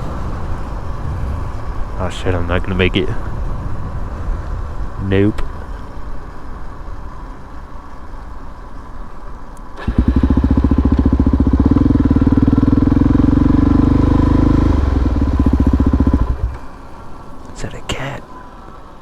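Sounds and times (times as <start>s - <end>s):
motorcycle rolling: 9.2s - 17.4s
motorcycle engine running loud: 9.8s - 16.7s.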